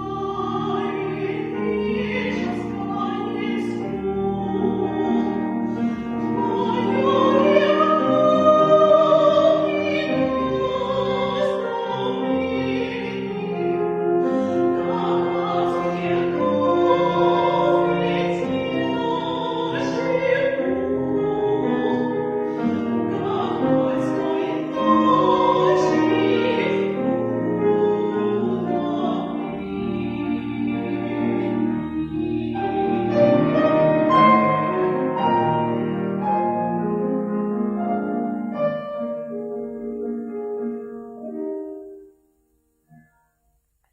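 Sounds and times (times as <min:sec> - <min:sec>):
operatic singing voice: 0:00.0 - 0:34.7
instrumental accompaniment: 0:00.0 - 0:43.9.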